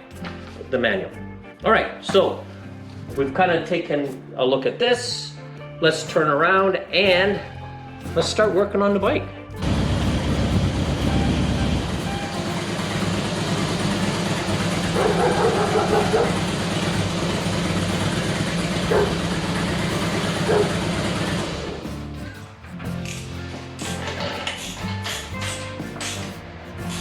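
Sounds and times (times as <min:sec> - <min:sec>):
motorcycle engine idling: 0:09.6 - 0:22.1.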